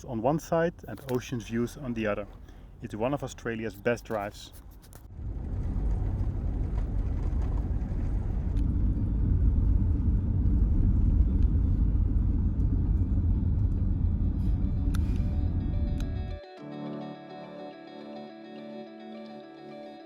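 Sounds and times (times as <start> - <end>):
vehicle driving on road: 4.9 - 16.3.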